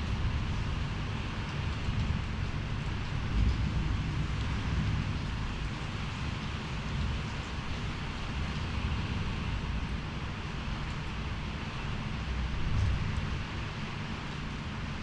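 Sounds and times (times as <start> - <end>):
wind buffeting microphone: 0.0 - 10.1.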